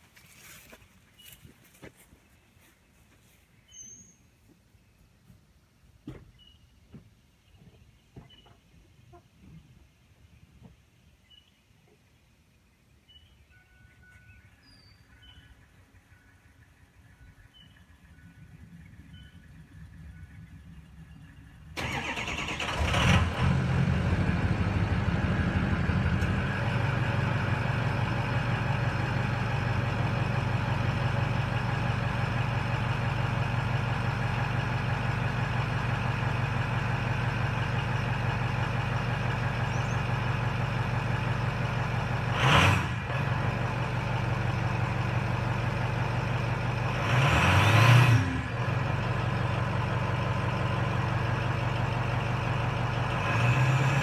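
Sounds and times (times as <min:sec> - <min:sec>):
diesel engine starting and idling: 0:16.1 - 0:54.0
engine revving: 0:21.8 - 0:32.6, 0:41.9 - 0:45.1, 0:46.5 - 0:54.0.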